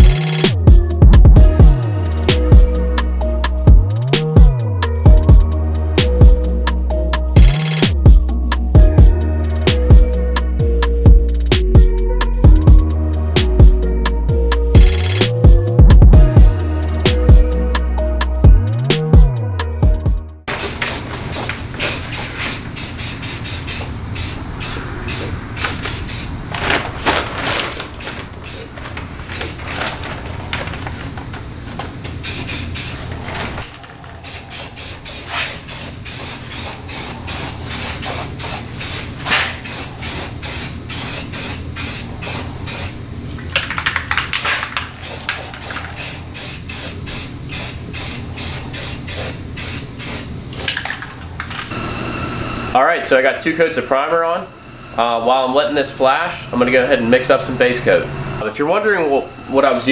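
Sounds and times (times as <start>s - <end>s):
hissing spray bursts: 20.5s - 51.4s.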